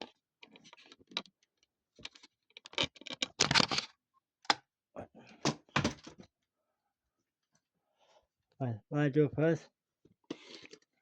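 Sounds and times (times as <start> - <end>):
hard objects clicking and knocking: 2.0 - 4.7, 5.4 - 6.3.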